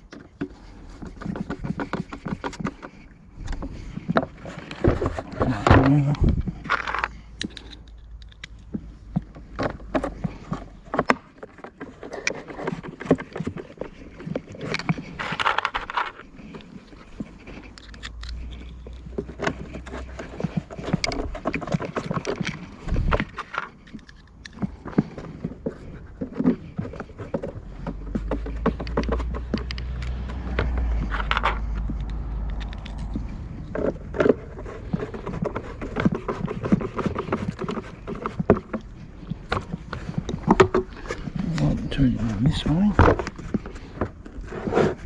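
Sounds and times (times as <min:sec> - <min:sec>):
clicks and knocks of tools: 0:00.0 - 0:38.9
plastic parts scraping: 0:00.0 - 0:45.0.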